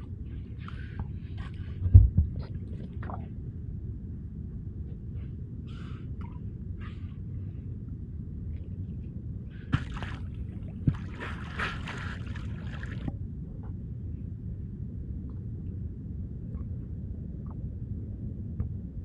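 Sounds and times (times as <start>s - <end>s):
low rumble of water and boat: 0.0s - 19.0s
dolphins blowing through blowholes: 5.2s - 7.3s, 11.0s - 12.9s.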